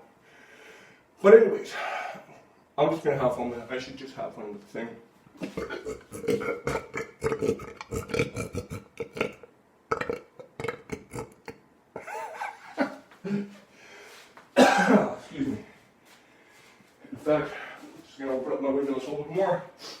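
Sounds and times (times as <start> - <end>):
man belching: 5.4 - 12.1.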